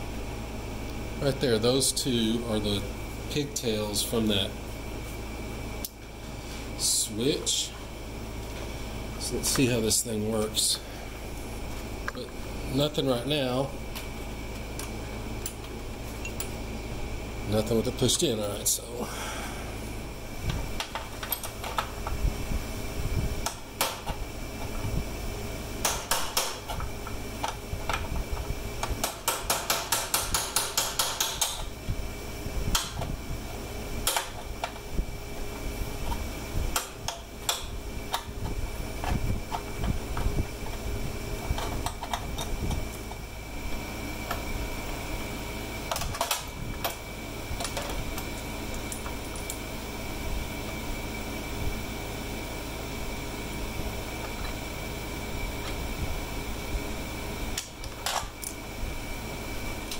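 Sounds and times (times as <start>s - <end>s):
shop fan humming: 0.0s - 59.9s
hand tools clicking on metal: 28.9s - 31.7s.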